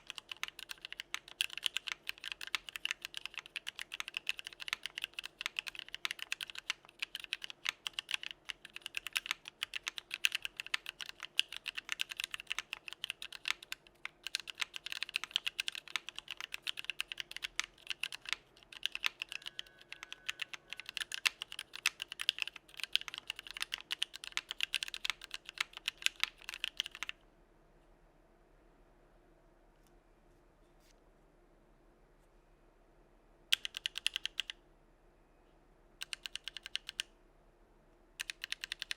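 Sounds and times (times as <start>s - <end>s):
fast mechanical keyboard typing: 0.0s - 27.2s, 33.5s - 34.6s, 36.0s - 37.1s, 38.2s - 38.9s.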